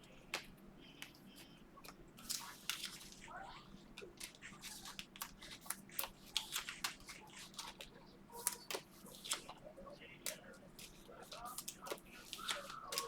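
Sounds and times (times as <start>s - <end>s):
cards rustling: 1.9s - 9.6s, 10.2s - 13.0s
plastic wrappers crinkling and tearing: 10.9s - 13.0s.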